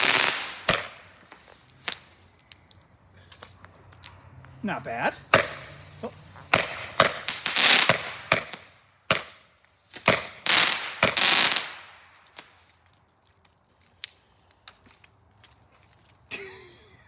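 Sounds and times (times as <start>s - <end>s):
fireworks bangs: 0.0s - 2.2s, 4.9s - 12.6s
crackling hissing fireworks bursts: 0.0s - 15.3s.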